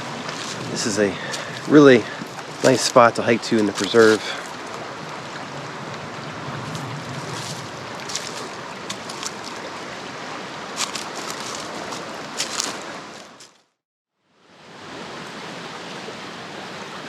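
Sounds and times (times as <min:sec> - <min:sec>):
creek running over rapids: 0:00.0 - 0:13.6, 0:14.3 - 0:17.0
water splashes: 0:00.0 - 0:13.6.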